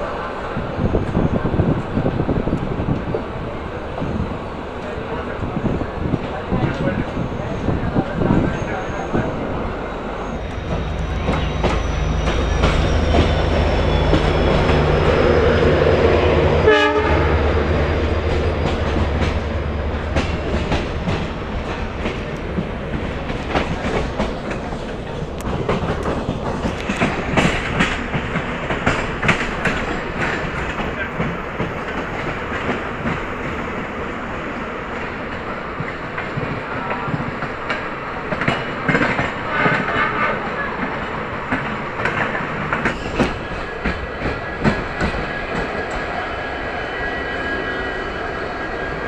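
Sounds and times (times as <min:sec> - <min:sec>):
train engine drone: 0:00.0 - 0:49.0
train wheels clickety-clack: 0:10.5 - 0:15.1, 0:17.9 - 0:46.2.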